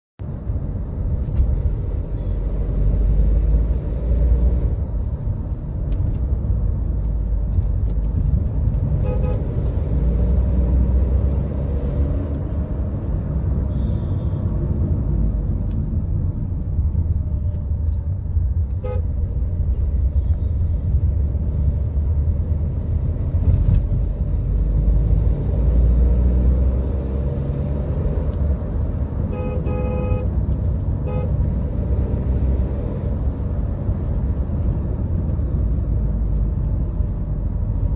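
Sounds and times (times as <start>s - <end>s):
car horn toots: 9.0s - 9.5s, 18.8s - 19.1s, 29.3s - 30.4s, 31.0s - 31.4s.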